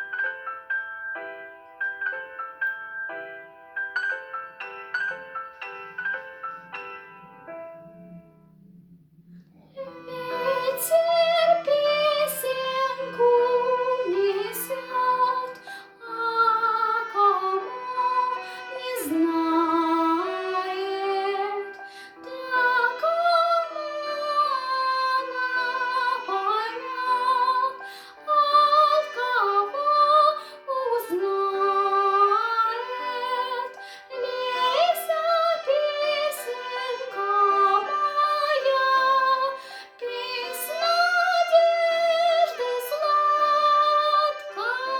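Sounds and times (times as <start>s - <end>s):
piano accompaniment: 0.0s - 44.9s
young voice singing with vibrato: 9.8s - 44.9s.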